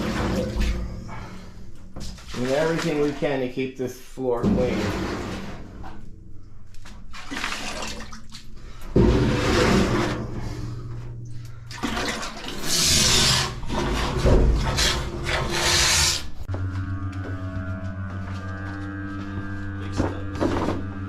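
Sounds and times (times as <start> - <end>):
oil and air gurgling through hose: 7.1 - 16.4.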